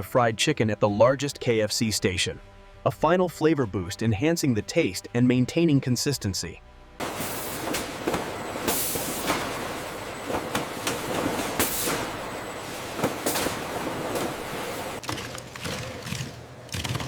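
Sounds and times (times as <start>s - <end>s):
machinery din: 7.0s - 17.0s.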